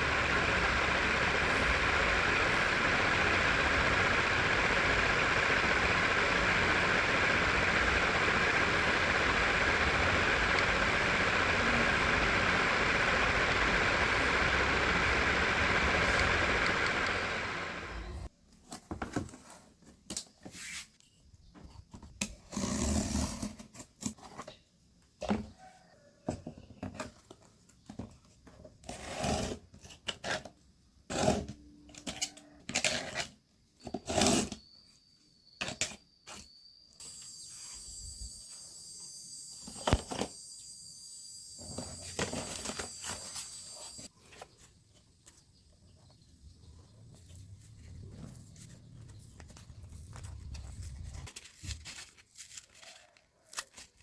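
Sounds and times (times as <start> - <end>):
small motor whining: 0.0 - 18.3, 37.0 - 44.2
handling cardboard and small parts: 41.6 - 46.2, 47.0 - 54.0.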